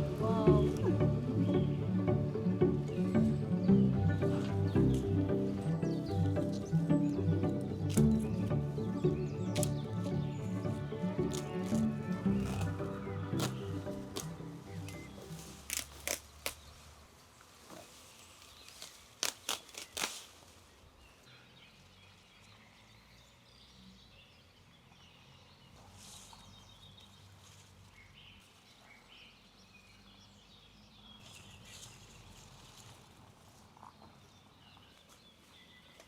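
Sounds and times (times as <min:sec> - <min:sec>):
distant bird calls: 0:00.0 - 0:16.8
sharp clicks: 0:09.5 - 0:10.2.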